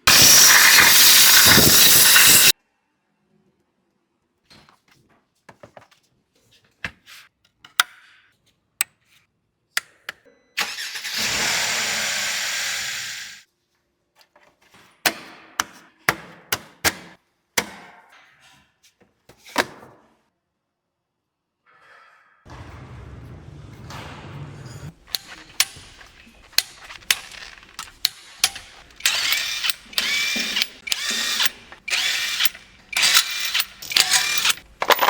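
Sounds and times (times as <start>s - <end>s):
metal tools clicking and knocking: 24.9s - 35.0s.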